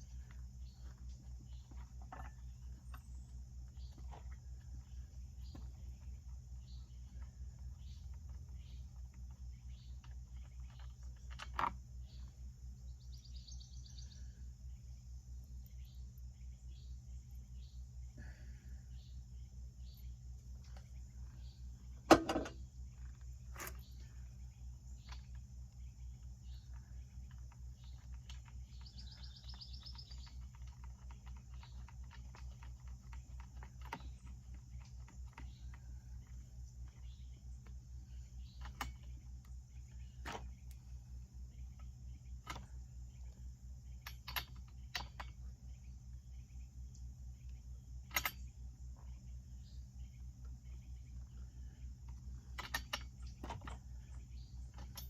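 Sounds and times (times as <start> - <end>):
crickets trilling: 0.0 - 55.0
low pulsing hum: 0.0 - 55.0
sharp clicks and knocks: 7.1 - 12.4, 22.0 - 24.1, 38.5 - 40.9, 41.6 - 45.6, 47.4 - 49.2, 52.0 - 55.0.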